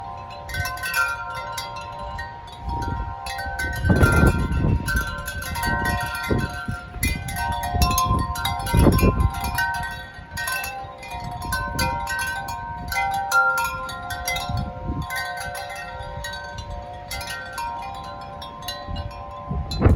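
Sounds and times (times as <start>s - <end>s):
wind chimes ringing: 0.0s - 19.9s
wind rumbling on microphone: 0.0s - 19.9s.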